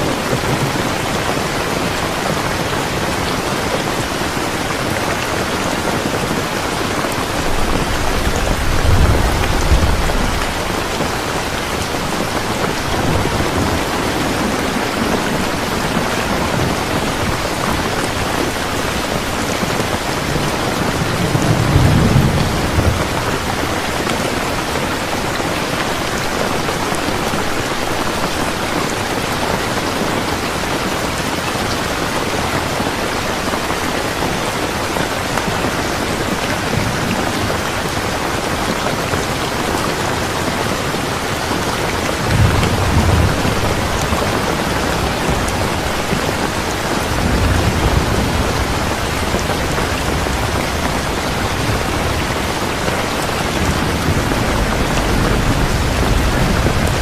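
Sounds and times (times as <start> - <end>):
steady rain falling: 0.0 - 57.0
thunder rumbling: 0.1 - 29.2, 40.9 - 57.0.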